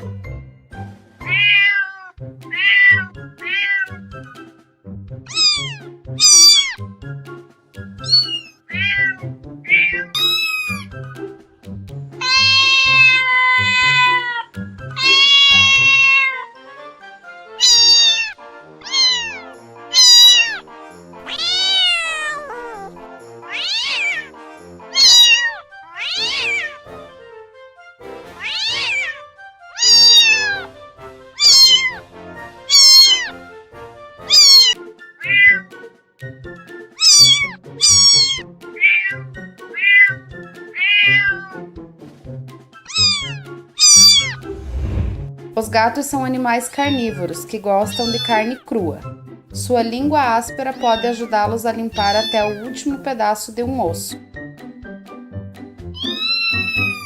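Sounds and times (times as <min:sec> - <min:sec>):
soft background music: 0:00.0 - 0:57.0
cat meowing: 0:01.2 - 0:04.0, 0:05.3 - 0:06.8, 0:08.0 - 0:11.0, 0:12.2 - 0:16.6, 0:17.6 - 0:20.6, 0:21.3 - 0:24.3, 0:24.9 - 0:26.8, 0:28.4 - 0:29.2, 0:29.8 - 0:30.7, 0:31.4 - 0:32.0, 0:32.7 - 0:33.4, 0:34.3 - 0:35.7, 0:37.0 - 0:41.7, 0:42.8 - 0:44.5, 0:46.8 - 0:48.7, 0:50.7 - 0:51.3, 0:51.9 - 0:52.8, 0:55.9 - 0:57.0.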